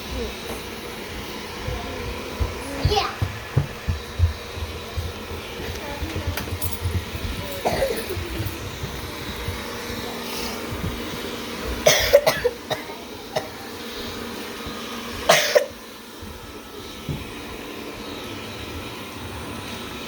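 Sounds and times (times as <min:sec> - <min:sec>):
low background hum: 0:01.6 - 0:13.6
person coughing: 0:07.6 - 0:08.2, 0:11.8 - 0:13.6, 0:15.3 - 0:15.8.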